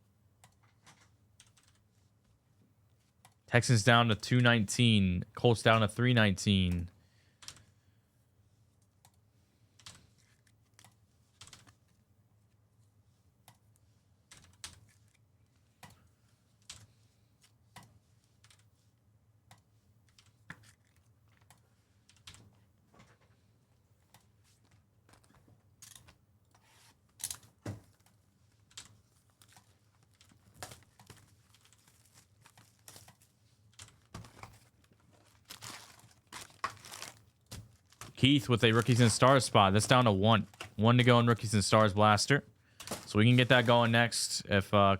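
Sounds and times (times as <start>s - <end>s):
low steady hum: 37.8s - 44.9s.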